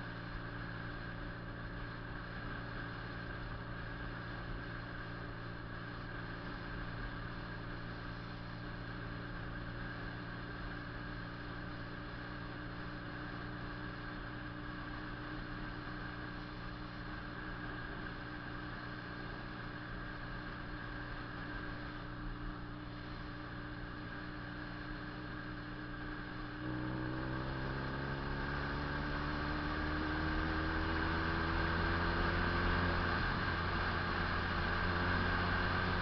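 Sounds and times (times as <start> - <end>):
motorcycle engine running: 0.0 - 36.0.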